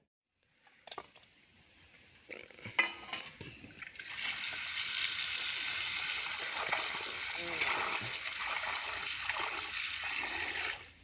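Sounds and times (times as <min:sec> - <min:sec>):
water pouring and splashing: 0:03.7 - 0:11.0.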